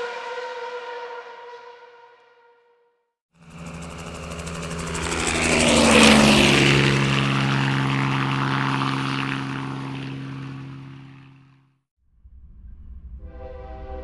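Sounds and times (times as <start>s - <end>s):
engine passing by: 3.4s - 11.6s.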